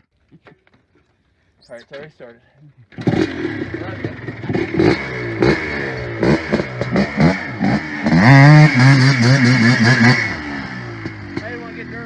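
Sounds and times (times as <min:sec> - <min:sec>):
small engine revving: 0:02.9 - 0:12.0.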